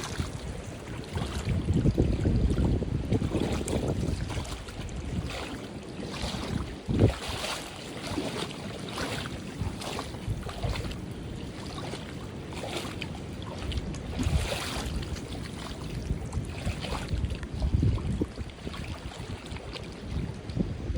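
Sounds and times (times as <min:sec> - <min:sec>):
waves splashing on rocky shore: 0:00.0 - 0:06.0
wind buffeting microphone: 0:00.0 - 0:20.9.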